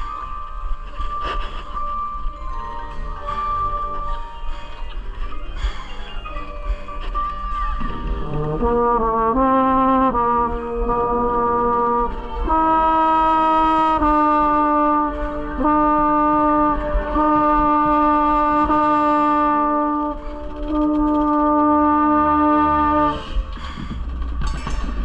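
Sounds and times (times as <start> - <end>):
brass section playing long chords: 8.0 - 23.5.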